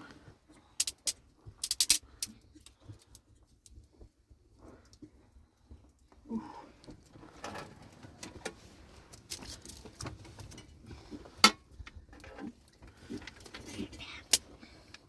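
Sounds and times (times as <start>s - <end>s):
objects clicking and knocking: 0.6s - 3.2s.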